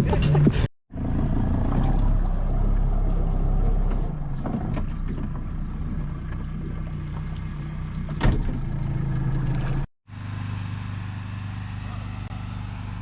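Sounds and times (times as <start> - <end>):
water noise: 1.6 - 9.9
motorboat engine running: 4.8 - 13.0.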